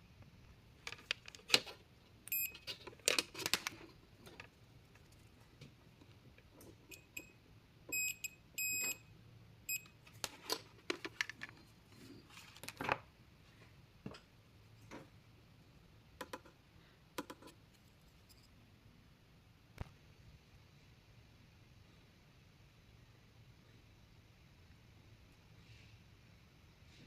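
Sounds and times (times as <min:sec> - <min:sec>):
short electronic beeps: 0:02.3 - 0:02.6, 0:07.9 - 0:09.0
tools clicking and tapping: 0:17.2 - 0:17.6.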